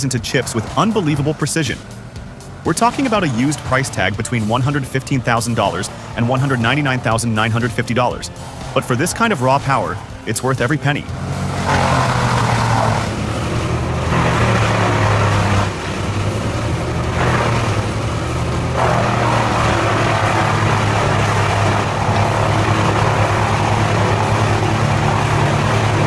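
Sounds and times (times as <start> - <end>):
diesel engine running: 0.0 - 26.0
wood being chipped: 10.9 - 26.0.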